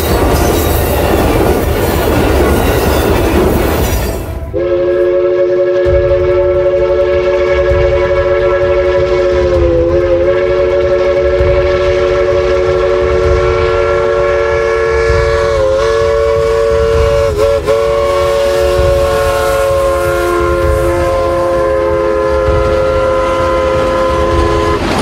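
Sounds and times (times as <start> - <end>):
train horn chord: 4.1 - 25.0.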